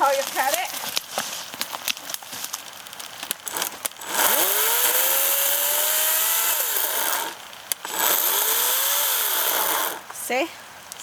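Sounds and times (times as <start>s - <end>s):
battery chainsaw motor whine: 3.4s - 10.3s.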